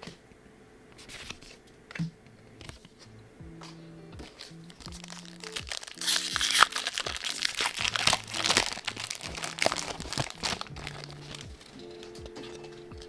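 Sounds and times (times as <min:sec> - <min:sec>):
soft background music: 0:01.9 - 0:13.0
foil wrapper crinkling and tearing: 0:04.4 - 0:12.8.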